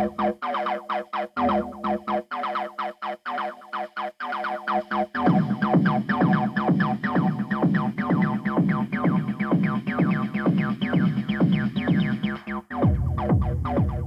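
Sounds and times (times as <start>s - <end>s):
techno music: 5.2s - 14.0s.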